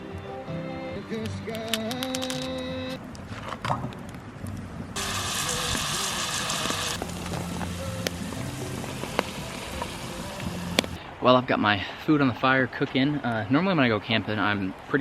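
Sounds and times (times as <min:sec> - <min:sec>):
campfire pops: 0:01.2 - 0:11.0
food sizzling in a pan: 0:05.0 - 0:11.0.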